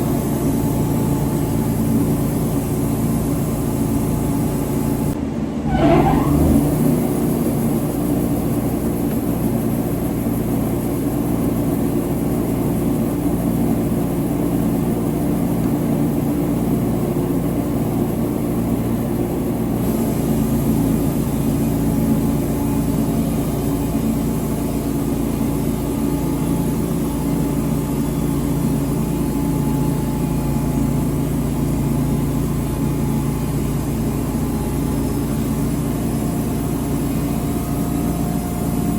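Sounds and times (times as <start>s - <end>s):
engine running: 0.0s - 38.9s
rising whine: 5.6s - 9.1s.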